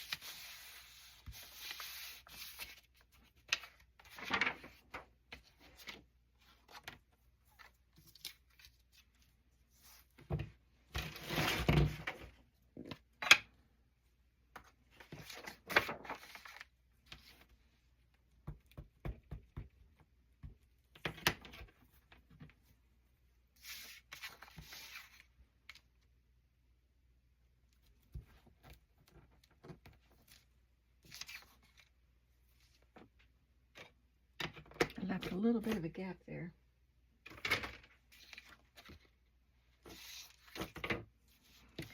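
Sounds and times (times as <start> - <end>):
paper scraping and rustling: 0.0 - 10.1, 23.6 - 25.3, 39.8 - 41.9.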